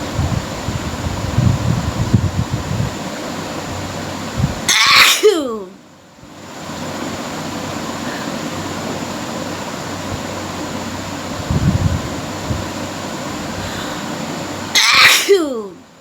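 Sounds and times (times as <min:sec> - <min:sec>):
steady background hiss: 0:00.0 - 0:16.0
person sneezing: 0:04.7 - 0:05.7, 0:14.8 - 0:15.8.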